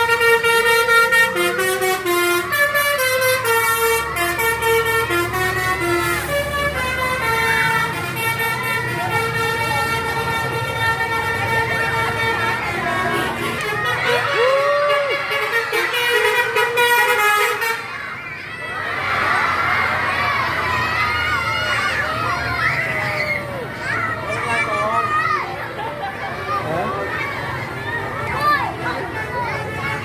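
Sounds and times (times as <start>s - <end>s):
multi-tone air horn tune: 0.0s - 17.9s
bus engine running: 0.0s - 30.0s.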